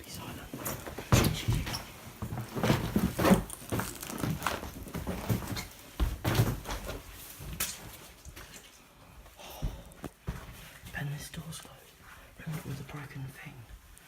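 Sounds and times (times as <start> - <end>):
people clambering knocks and scuffs: 0.2 - 11.1.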